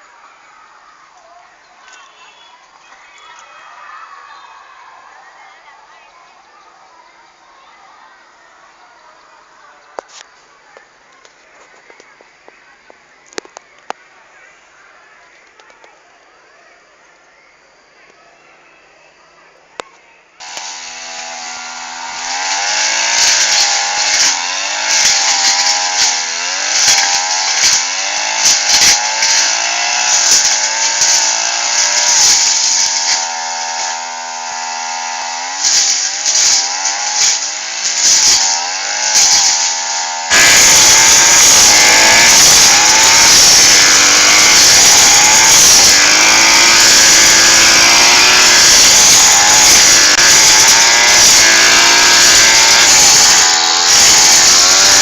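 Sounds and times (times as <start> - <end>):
lawn mower engine revving: 20.4 - 55.0.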